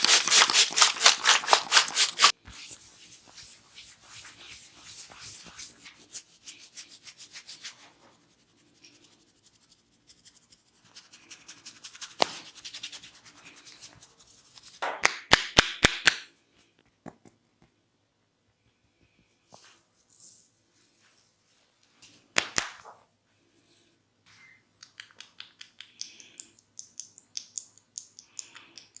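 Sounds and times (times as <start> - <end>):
hands rubbing hair and scalp: 0.0 - 8.2, 10.8 - 14.8.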